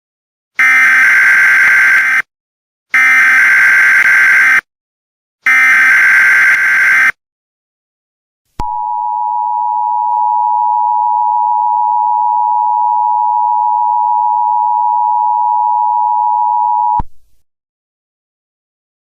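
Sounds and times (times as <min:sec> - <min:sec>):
harsh two-tone alarm: 0:00.6 - 0:02.3, 0:03.0 - 0:04.7, 0:05.4 - 0:07.2.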